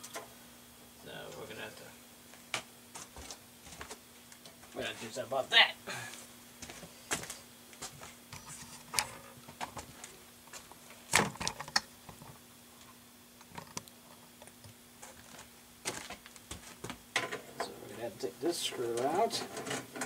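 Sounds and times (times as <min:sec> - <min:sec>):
faint steady hum: 0:00.0 - 0:20.0
clicks and knocks of handling parts: 0:17.2 - 0:17.7.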